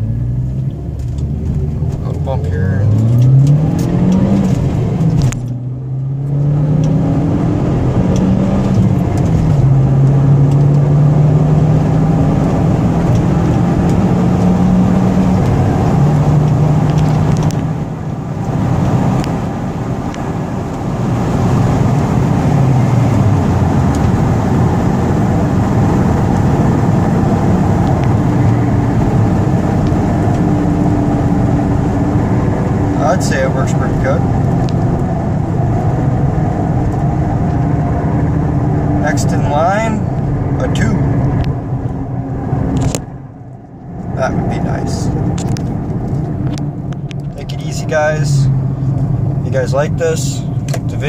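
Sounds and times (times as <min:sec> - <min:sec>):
car engine accelerating: 0:00.0 - 0:51.0.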